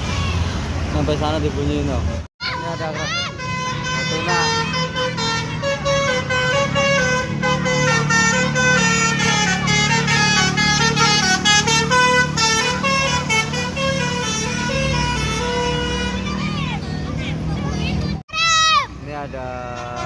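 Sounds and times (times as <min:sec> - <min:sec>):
bus engine running: 0:00.0 - 0:20.0
bus horn playing melody: 0:02.5 - 0:16.7, 0:19.6 - 0:20.0.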